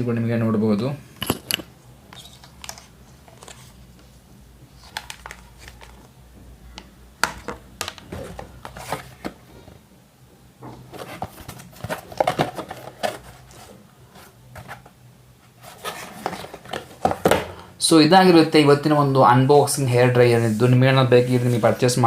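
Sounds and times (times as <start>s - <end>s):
plastic hair dryer handling: 4.8s - 6.1s, 11.0s - 13.3s.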